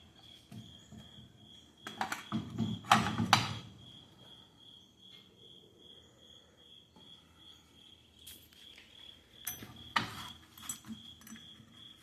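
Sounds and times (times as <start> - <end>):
metal tools clanking: 9.4 - 11.8.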